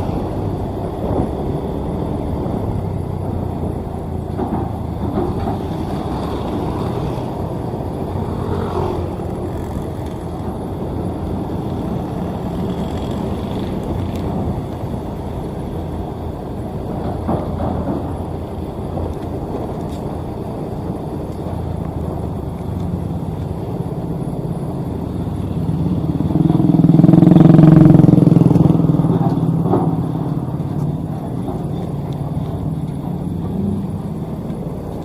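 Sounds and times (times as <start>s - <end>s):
asphalt paver engine running: 0.0s - 35.0s
vehicle passing close by: 23.8s - 35.0s.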